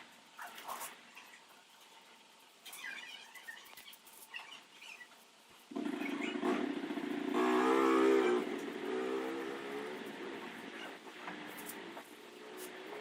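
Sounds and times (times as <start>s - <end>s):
faint small sounds: 0.0s - 6.6s.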